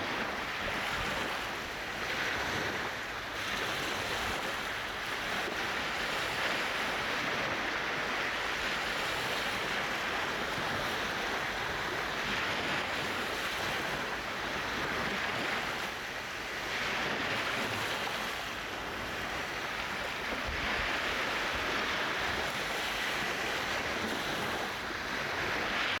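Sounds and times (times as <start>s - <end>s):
small waves washing on beach: 0.0s - 26.0s.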